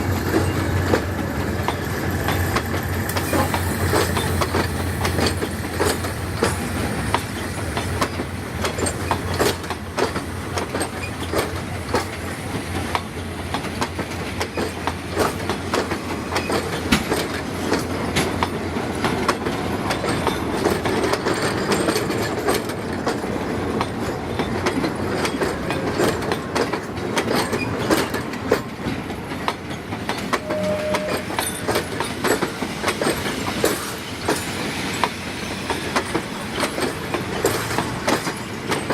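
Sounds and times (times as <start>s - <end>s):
wheels clicking over rail joints: 0.1s - 30.5s, 31.1s - 38.9s
faint wheel squeal: 30.4s - 31.6s.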